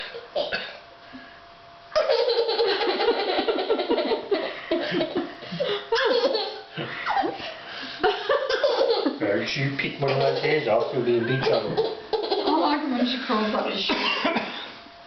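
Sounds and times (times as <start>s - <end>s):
people laughing heartily: 2.6s - 9.2s.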